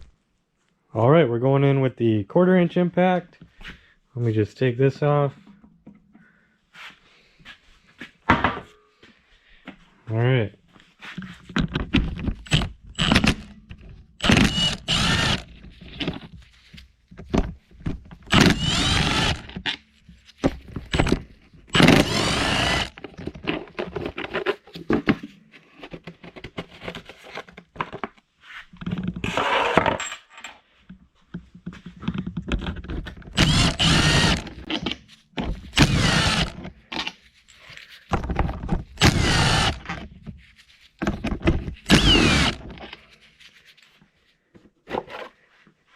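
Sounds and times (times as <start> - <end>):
cordless impact wrench bursts: 12.5 - 13.5, 14.2 - 15.6, 18.3 - 19.6, 20.9 - 23.0, 33.4 - 34.7, 35.7 - 36.6, 39.0 - 39.9, 41.8 - 42.8.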